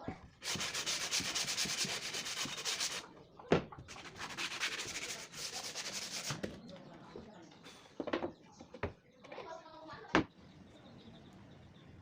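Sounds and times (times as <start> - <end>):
sandpaper rubbing on plywood: 0.4 - 3.0, 3.9 - 6.5.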